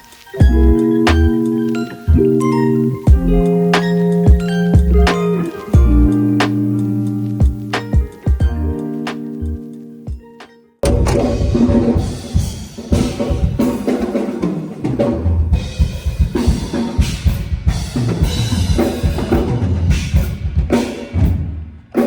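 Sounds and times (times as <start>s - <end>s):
drum kit kick and snare: 0.0s - 1.4s, 3.1s - 9.3s, 10.1s - 22.0s
full band music: 0.0s - 9.7s.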